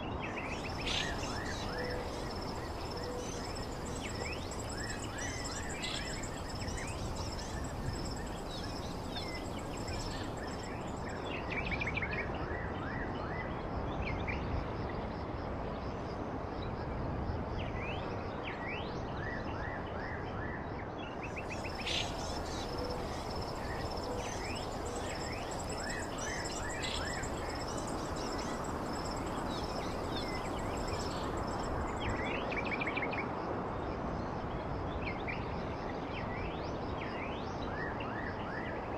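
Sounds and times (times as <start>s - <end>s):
small birds chirping: 0.4s - 11.2s, 21.3s - 32.3s
high insect trill: 0.4s - 11.3s, 21.3s - 32.6s.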